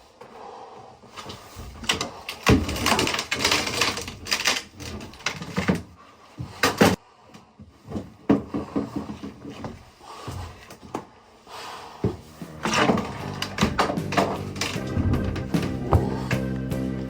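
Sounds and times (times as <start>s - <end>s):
scraping and clattering: 12.2s - 16.4s.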